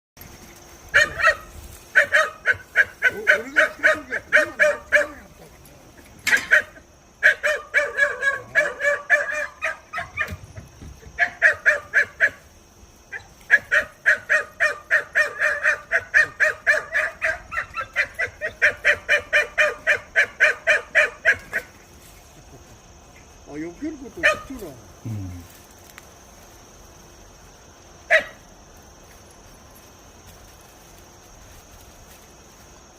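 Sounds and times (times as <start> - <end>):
puppies yapping: 0.9 - 22.7, 24.2 - 24.6.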